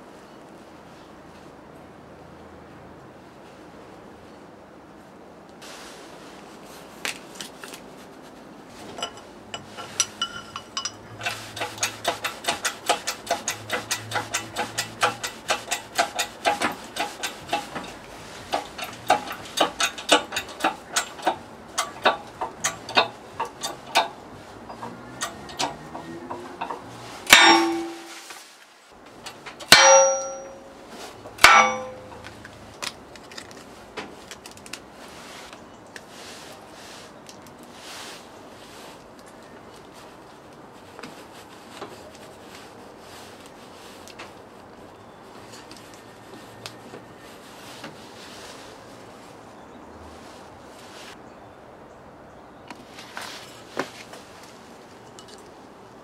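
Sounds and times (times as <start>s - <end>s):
hammer tapping on metal: 9.0s - 28.2s, 29.7s - 30.7s, 31.4s - 32.2s
heavy hammer blows on metal: 9.0s - 28.3s, 29.6s - 30.7s, 31.3s - 32.2s.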